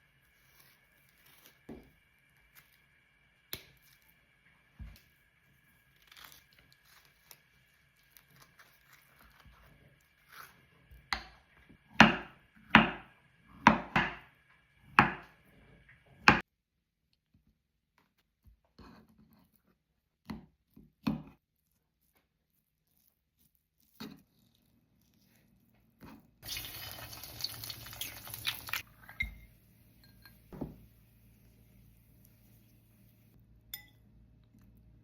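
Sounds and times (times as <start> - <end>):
knife chopping on cutting board: 11.1 - 14.3, 14.9 - 15.3.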